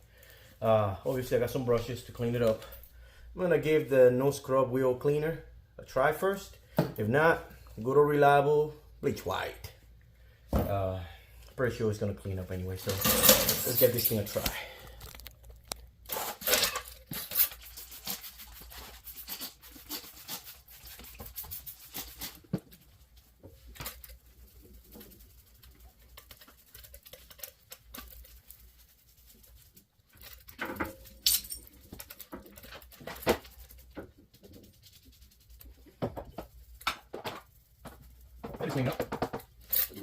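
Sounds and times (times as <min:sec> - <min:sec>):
handling clicks and rattles: 0:30.1 - 0:33.7.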